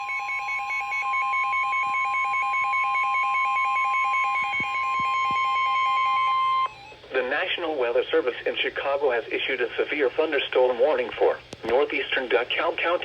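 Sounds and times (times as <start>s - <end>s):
steady warning alarm tone: 0.0s - 7.1s.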